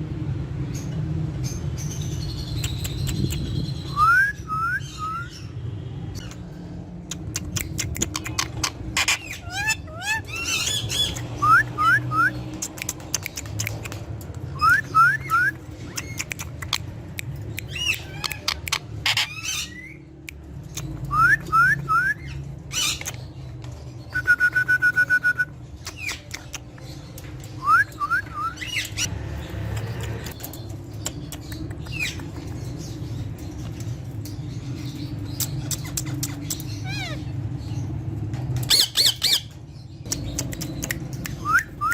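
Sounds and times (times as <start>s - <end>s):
sharp clicks: 7.0s - 8.7s, 12.5s - 14.4s, 29.7s - 32.8s, 40.0s - 41.9s
parrot chirping: 7.1s - 14.0s, 14.6s - 20.0s, 34.9s - 38.0s, 38.6s - 41.9s.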